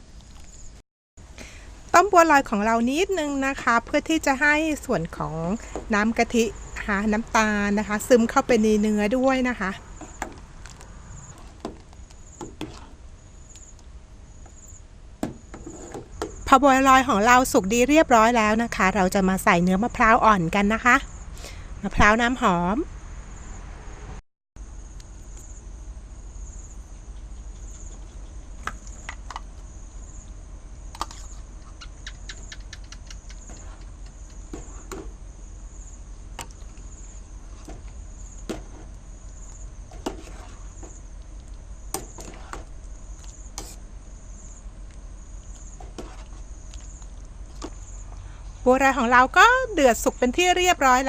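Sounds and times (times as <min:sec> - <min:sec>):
insects trilling: 0:04.0 - 0:18.7, 0:24.6 - 0:51.0.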